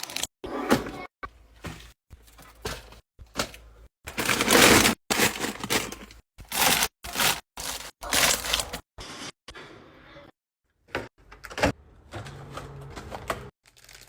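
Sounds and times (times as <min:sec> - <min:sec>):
packaging crackling and crinkling: 0:04.1 - 0:08.8, 0:13.6 - 0:14.0.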